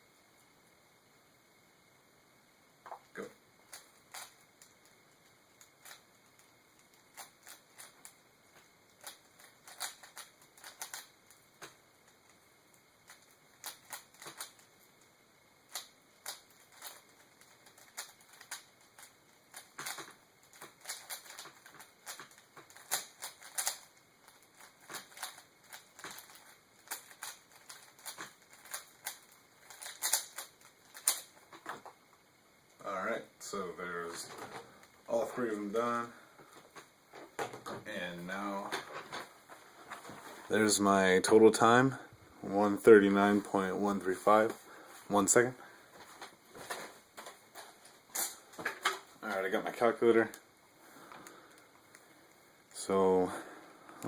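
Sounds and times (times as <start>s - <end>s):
plastic puzzle cube clicking: 6.9s - 8.2s, 9.0s - 11.4s, 15.7s - 31.4s.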